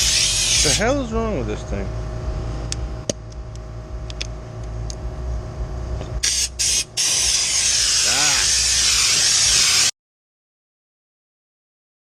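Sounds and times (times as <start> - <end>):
pressure washer spray hissing: 0.0 - 0.8, 6.2 - 9.9
pressure washer hum: 0.0 - 1.5, 6.1 - 9.9.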